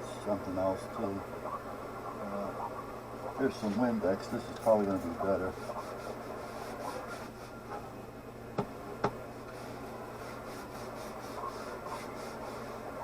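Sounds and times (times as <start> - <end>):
low electrical hum: 0.0 - 13.0
rubbing and handling noise: 3.3 - 7.9, 9.2 - 13.0.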